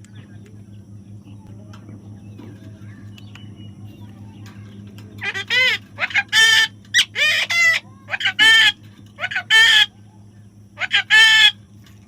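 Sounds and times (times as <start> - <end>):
low steady hum: 0.0 - 12.0
parrot squawking: 5.2 - 10.0, 10.8 - 11.6.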